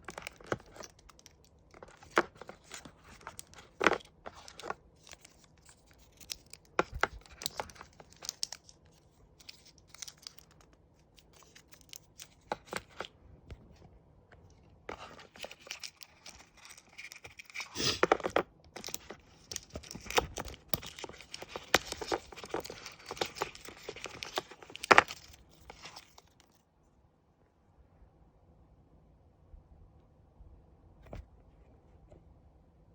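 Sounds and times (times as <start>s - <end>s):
crinkling and tearing: 0.0s - 13.1s, 14.9s - 26.6s.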